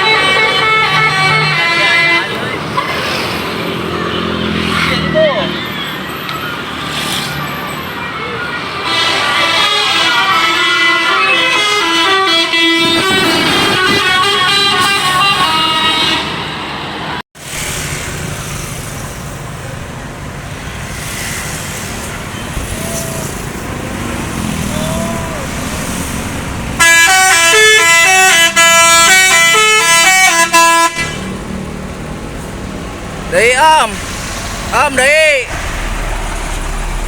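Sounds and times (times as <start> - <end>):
bus horn playing melody: 0.0 - 2.8, 8.8 - 16.7, 26.8 - 31.4
people in street: 0.0 - 37.0
traffic: 0.0 - 37.0.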